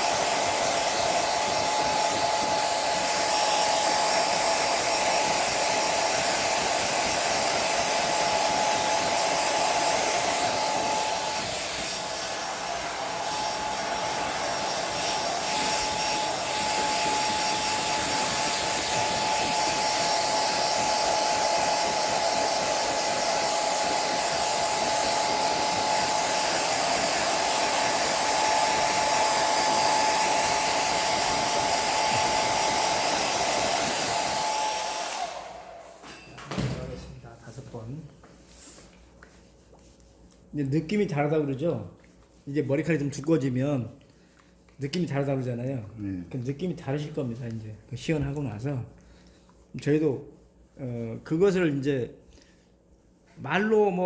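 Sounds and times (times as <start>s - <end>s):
hair dryer running: 0.0s - 36.8s.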